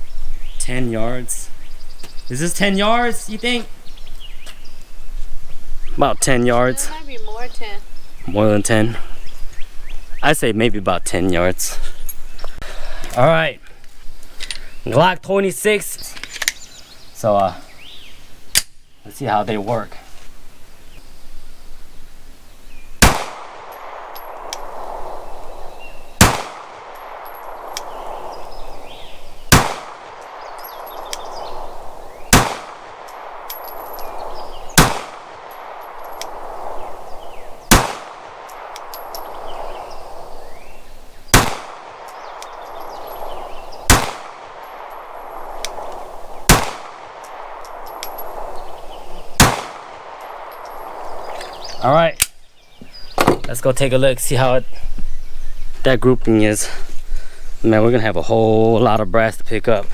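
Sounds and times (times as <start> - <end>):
pistol shots: 23.0 - 51.7.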